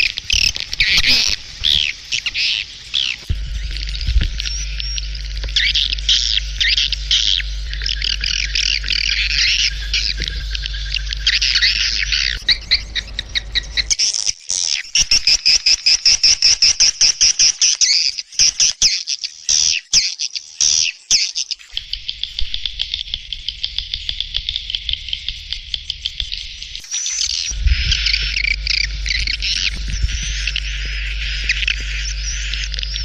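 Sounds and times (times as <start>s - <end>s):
low hum: 0.0s - 14.0s, 21.7s - 33.0s
swiftlets twittering: 0.0s - 18.8s, 21.7s - 33.0s
sharp bird chirps: 0.0s - 33.0s.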